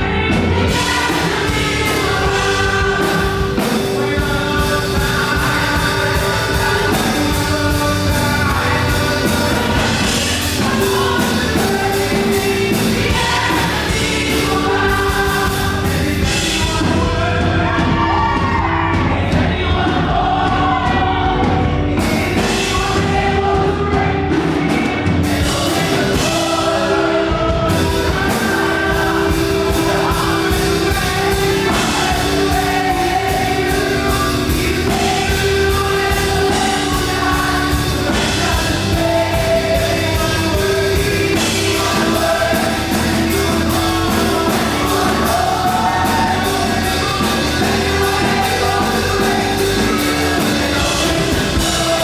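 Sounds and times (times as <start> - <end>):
band with drums: 0.0 - 52.0
group singing gospel song: 0.0 - 52.0.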